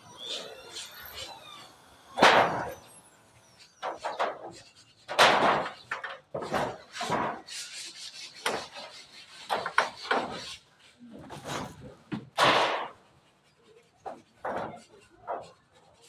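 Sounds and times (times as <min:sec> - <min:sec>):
scraping strokes on wood: 0:00.0 - 0:11.0.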